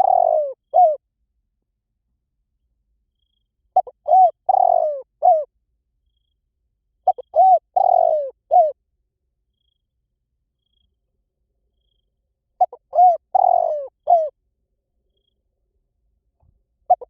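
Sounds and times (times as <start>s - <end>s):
dove cooing: 0.0s - 1.0s, 3.8s - 5.5s, 7.0s - 8.8s, 12.6s - 14.4s.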